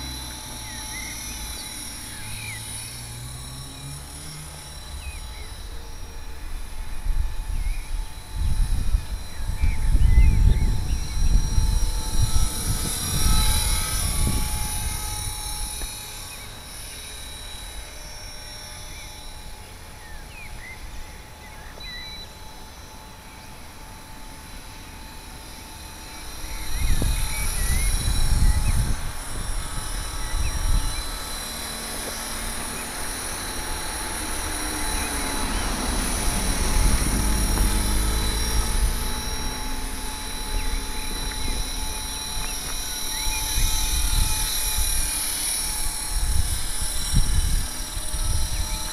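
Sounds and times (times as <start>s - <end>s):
low rushing buffets: 0.0s - 19.1s, 26.7s - 48.9s
model helicopter rotor whine: 0.0s - 48.9s.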